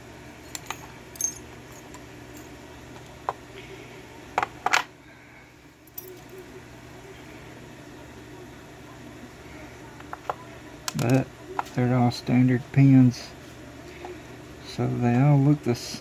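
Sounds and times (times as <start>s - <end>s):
small metal lock parts clicking: 10.9s - 11.2s.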